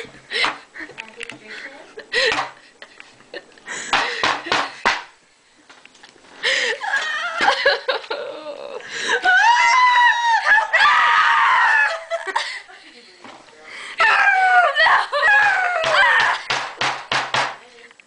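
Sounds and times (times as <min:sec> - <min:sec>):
giggling: 0:06.4 - 0:09.6
girl screaming: 0:09.1 - 0:12.2, 0:14.0 - 0:16.5.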